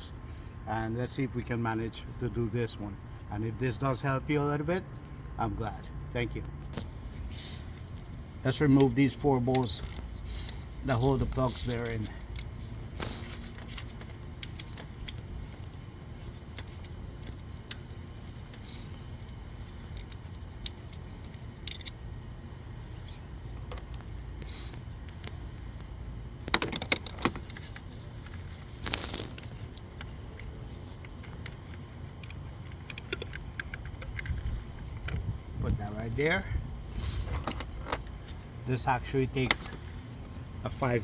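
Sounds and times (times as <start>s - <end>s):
steady low rumble: 27.2s - 41.0s.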